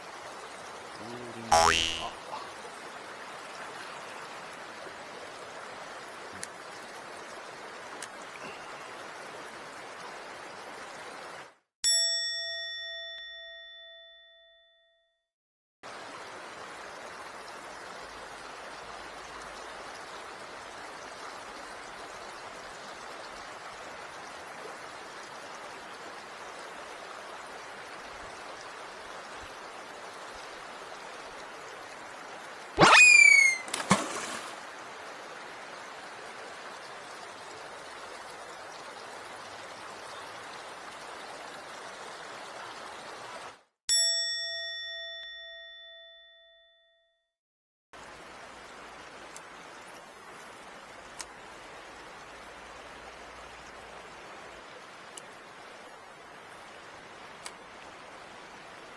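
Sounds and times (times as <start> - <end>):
stream water rushing: 32.8 - 34.9.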